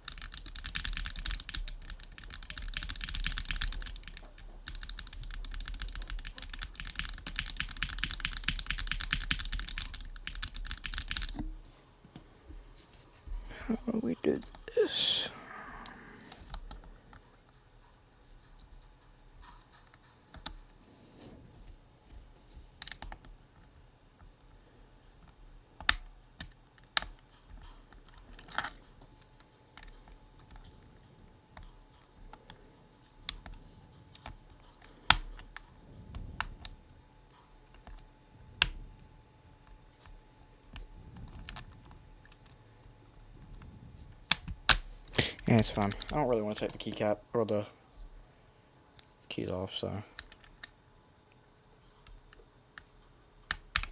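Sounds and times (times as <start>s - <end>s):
keyboard keys clicking: 0.0s - 11.6s, 22.8s - 24.4s, 25.0s - 36.8s, 51.8s - 53.9s.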